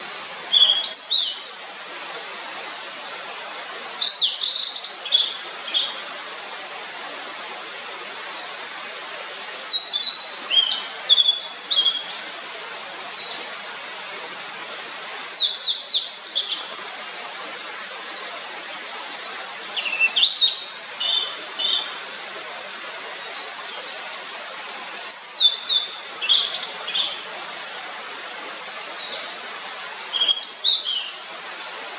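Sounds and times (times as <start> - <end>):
steady background hiss: 0.0 - 31.9
bird singing whistled notes: 0.5 - 1.4, 3.9 - 6.4, 9.4 - 12.3, 15.3 - 16.7, 25.0 - 27.7, 30.1 - 31.1.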